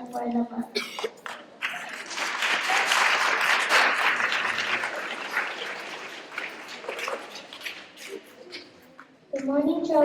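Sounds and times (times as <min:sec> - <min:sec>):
children applauding: 0:01.2 - 0:08.4.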